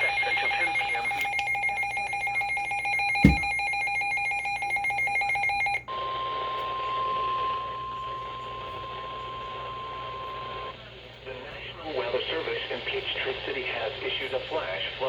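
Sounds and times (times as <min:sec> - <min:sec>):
radio hiss: 0:00.0 - 0:01.3, 0:08.4 - 0:15.0.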